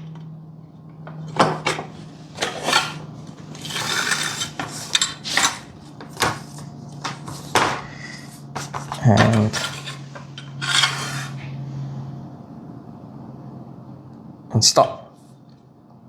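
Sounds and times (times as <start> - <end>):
belt scraping through curtain track: 3.6 - 5.7, 9.5 - 11.5.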